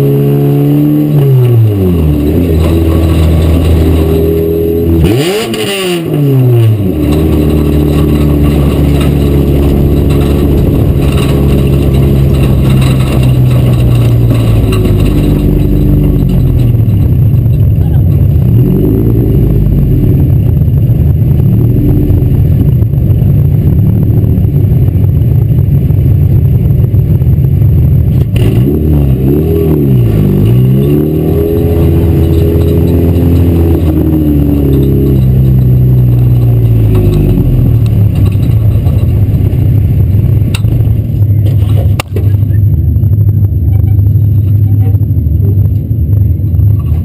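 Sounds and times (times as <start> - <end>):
race car engine revving: 0.0 - 25.0, 27.6 - 47.0.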